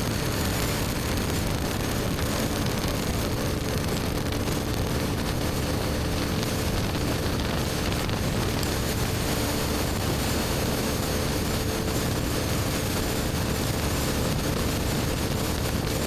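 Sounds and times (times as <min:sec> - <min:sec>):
motorcycle engine cruising: 0:00.0 - 0:16.0
wind and road noise: 0:00.0 - 0:16.0.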